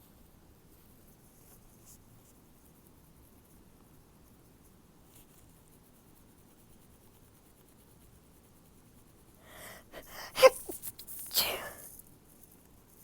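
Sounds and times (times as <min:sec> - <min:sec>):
quick breaths in: 0:09.4 - 0:11.8
stifled sneeze: 0:09.5 - 0:11.8.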